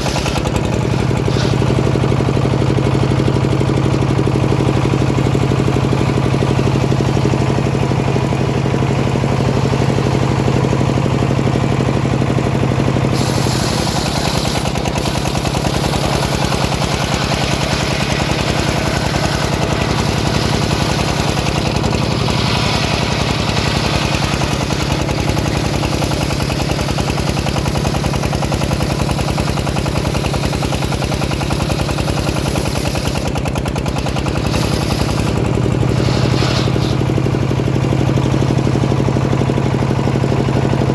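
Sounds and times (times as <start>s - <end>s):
saw blade cutting log: 0.0s - 2.7s, 13.1s - 37.9s
sawmill engine running: 0.0s - 40.9s.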